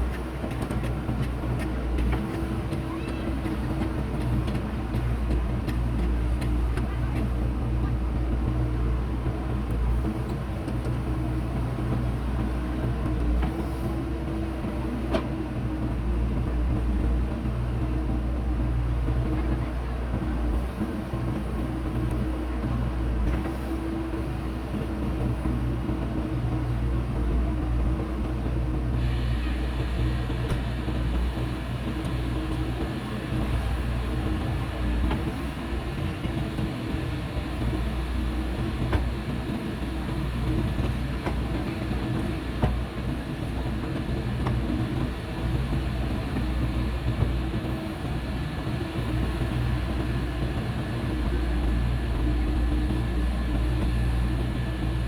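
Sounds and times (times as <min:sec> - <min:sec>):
diesel engine running under load: 0:00.0 - 0:55.0.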